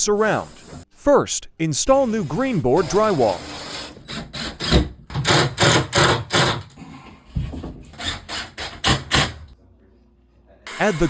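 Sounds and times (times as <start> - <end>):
hand tool rasping drywall: 2.0 - 9.6.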